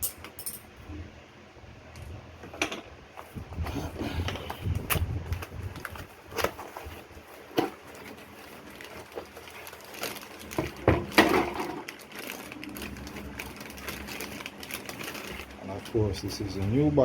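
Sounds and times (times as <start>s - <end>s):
rustling: 4.4s - 15.9s.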